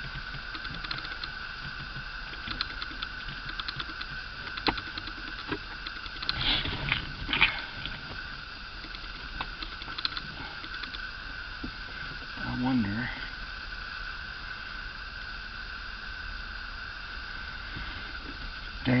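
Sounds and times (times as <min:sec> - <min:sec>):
hands clicking and tapping switch: 0:00.0 - 0:06.4
steady high-pitched hum: 0:00.0 - 0:19.0.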